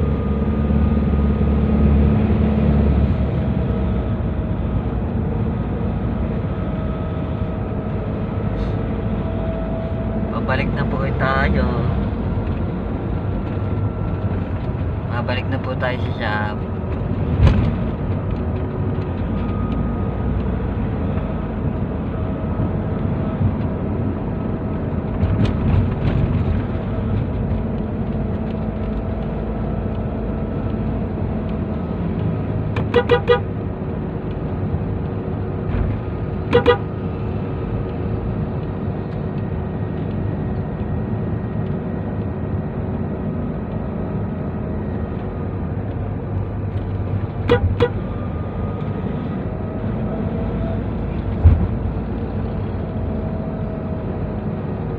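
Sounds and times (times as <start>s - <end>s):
van engine and road noise: 0.0s - 54.9s
vehicle horn toots: 32.8s - 33.5s, 36.5s - 36.9s, 47.5s - 48.0s.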